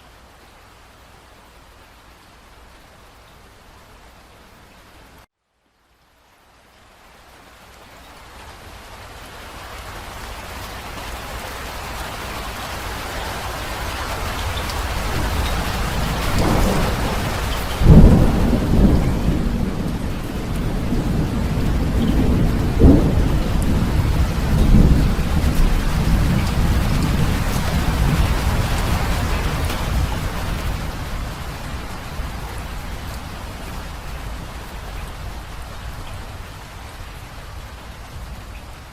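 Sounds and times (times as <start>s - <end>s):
heavy rain falling: 0.0s - 38.9s
rolling thunder: 14.7s - 35.5s.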